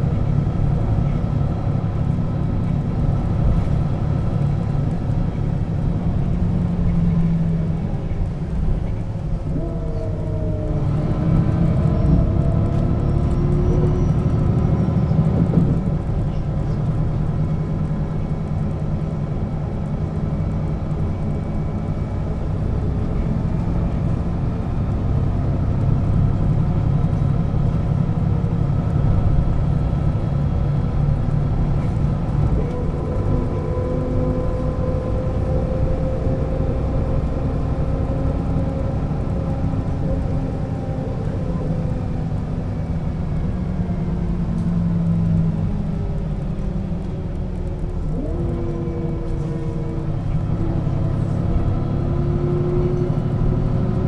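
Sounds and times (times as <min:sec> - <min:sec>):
bus diesel engine rumble: 0:00.0 - 0:54.0.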